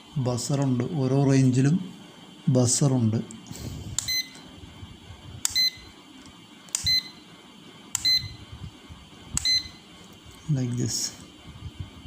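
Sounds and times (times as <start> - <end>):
clamp meter beeping: 4.0 - 4.5, 5.4 - 6.0, 6.7 - 7.3, 7.9 - 8.5, 9.4 - 9.9
rotary switch clicking: 5.4 - 7.1, 7.9 - 8.2.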